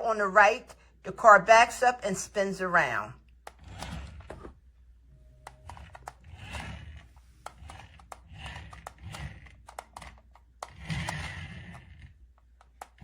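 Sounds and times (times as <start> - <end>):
toy car motor whirring: 3.5 - 4.4, 5.4 - 13.0.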